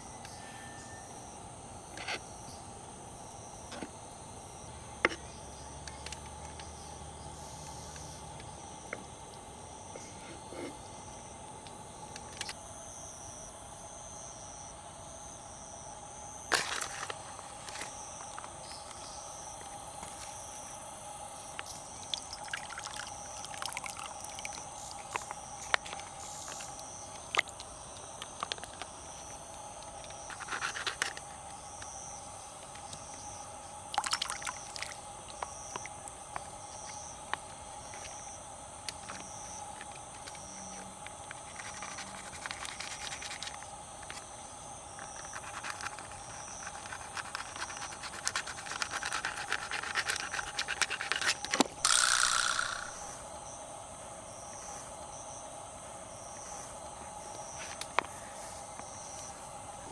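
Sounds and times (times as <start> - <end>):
insects chirring: 0.0 - 59.9
sharp clicks: 51.8 - 53.0.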